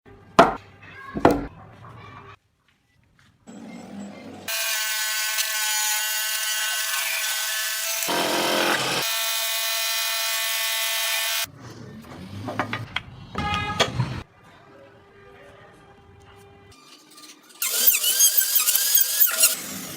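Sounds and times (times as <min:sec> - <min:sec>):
power carving tool whining: 0:04.5 - 0:11.5, 0:17.6 - 0:19.9.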